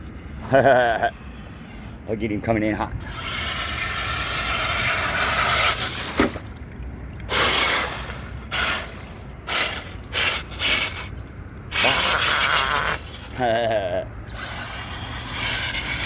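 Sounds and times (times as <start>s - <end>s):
wheels churning mud and water: 0.0s - 16.0s
rc truck motor surging: 3.0s - 6.1s, 14.2s - 16.0s.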